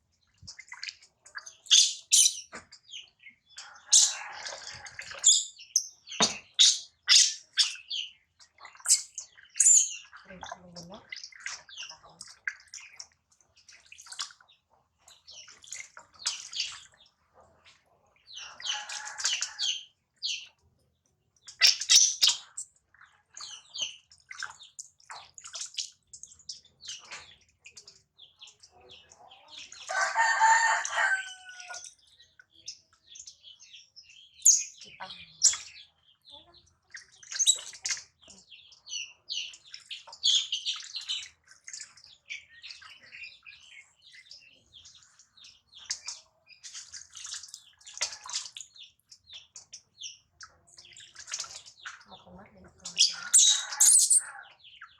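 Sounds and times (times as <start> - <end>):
animal chirps and squeaks: 0.6 - 2.8, 3.6 - 8.1, 8.8 - 12.1, 21.5 - 22.7, 34.4 - 36.6, 37.3 - 38.4, 50.4 - 54.9.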